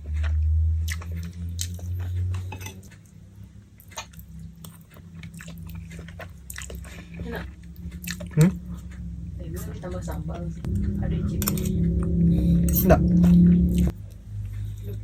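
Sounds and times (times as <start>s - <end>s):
chewing noodles: 0.0s - 9.1s
low hum: 0.0s - 15.0s.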